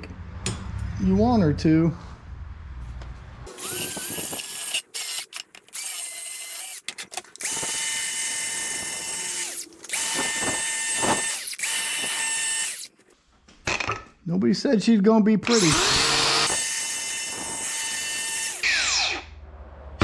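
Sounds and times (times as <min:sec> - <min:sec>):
electric power tool whining: 0:03.5 - 0:12.9, 0:15.5 - 0:19.1.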